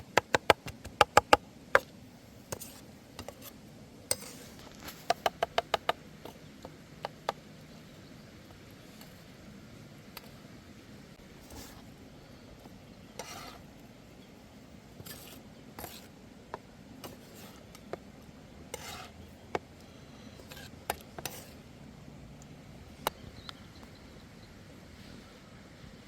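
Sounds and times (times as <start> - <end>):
low steady hum: 0.0 - 26.0
utensils scraping and clicking: 2.5 - 6.4, 13.1 - 13.7, 15.0 - 18.0, 18.7 - 19.6, 20.3 - 21.6.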